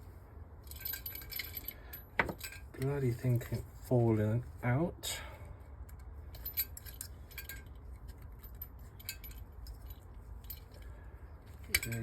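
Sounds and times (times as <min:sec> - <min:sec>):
low steady hum: 0:00.0 - 0:12.0
small metal parts clinking: 0:00.6 - 0:03.7, 0:05.9 - 0:12.0.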